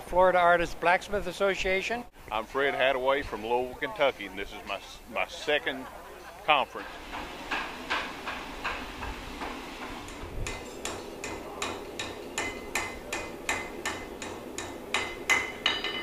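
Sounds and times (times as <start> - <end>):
hammer striking an anvil: 6.8 - 16.0.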